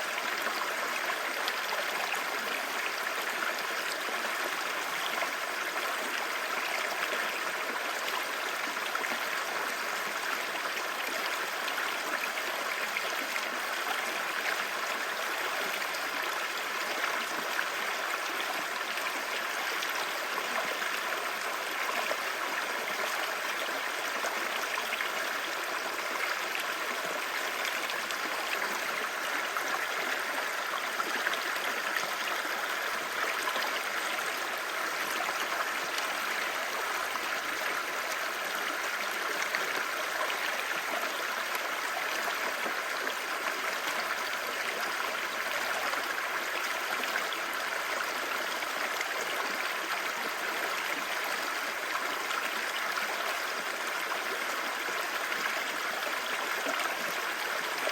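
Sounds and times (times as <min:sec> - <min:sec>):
stream babbling over rocks: 0:00.0 - 0:57.9.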